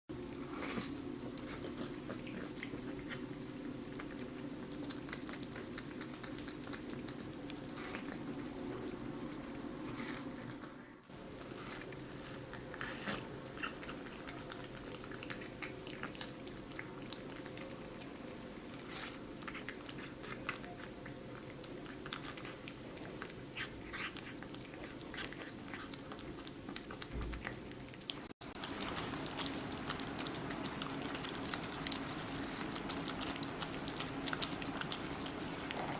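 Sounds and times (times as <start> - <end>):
animals chewing watermelon: 0.1 - 35.9.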